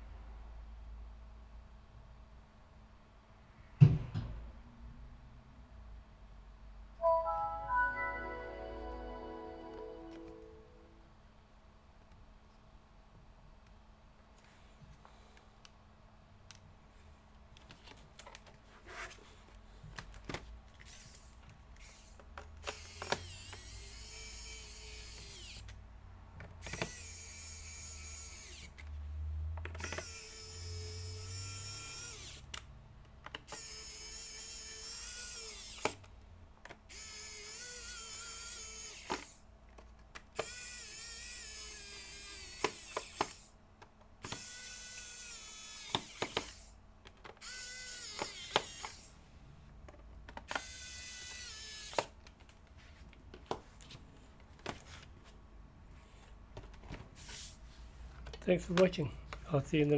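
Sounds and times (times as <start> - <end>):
electric screwdriver whining: 20.8 - 25.8, 26.6 - 28.8, 33.5 - 36.0, 40.4 - 43.5, 47.4 - 49.1, 50.5 - 52.1.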